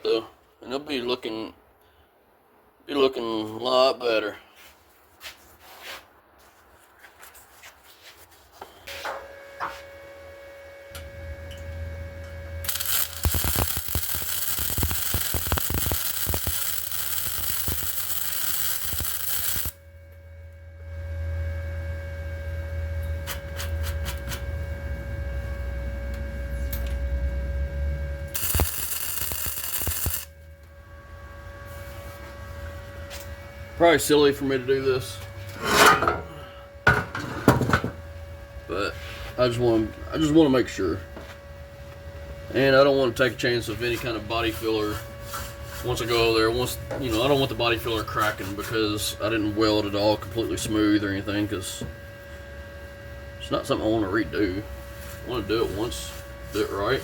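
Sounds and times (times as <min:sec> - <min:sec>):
welder low hum: 0:08.9 - 0:57.0
welding arc crackling: 0:12.6 - 0:19.8, 0:28.3 - 0:30.5.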